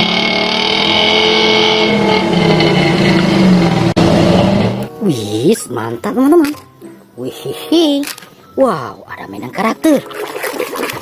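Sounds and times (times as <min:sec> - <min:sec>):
car engine running: 0:00.0 - 0:04.9.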